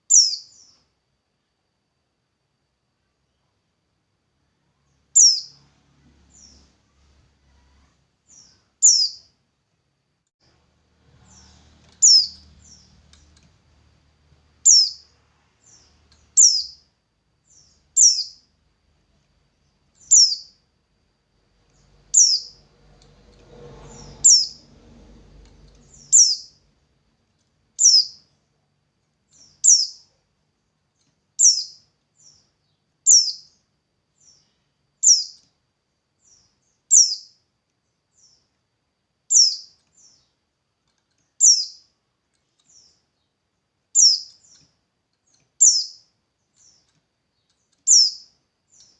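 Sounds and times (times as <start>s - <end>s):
songbird chirping: 0.0s - 48.9s
faint low rumble: 1.4s - 31.6s.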